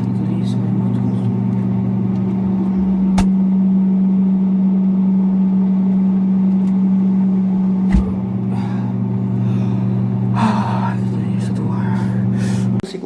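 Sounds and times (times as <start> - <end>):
appliance motor humming: 0.0 - 12.8
single knock: 7.9 - 8.3.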